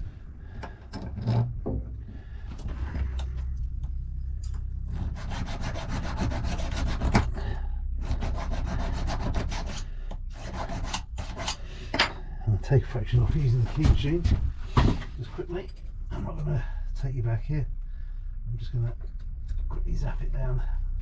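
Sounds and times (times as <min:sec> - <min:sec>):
low steady hum: 0:00.0 - 0:21.0
metal-on-metal scraping: 0:04.2 - 0:12.3.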